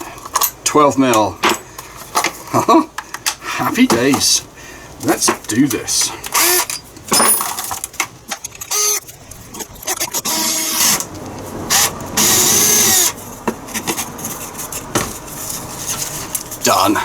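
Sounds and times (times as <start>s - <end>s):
electric drill boring: 6.3s - 6.7s, 8.6s - 9.0s, 9.8s - 13.2s.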